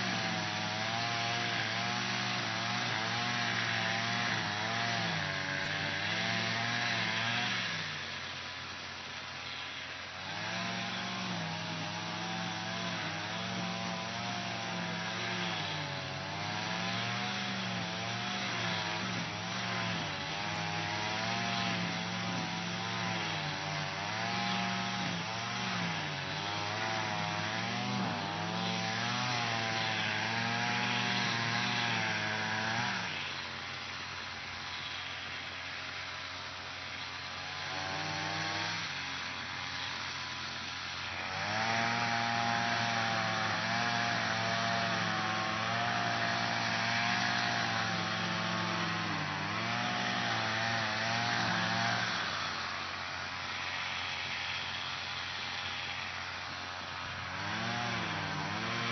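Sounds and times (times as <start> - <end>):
lawn mower engine running: 0.0 - 58.9.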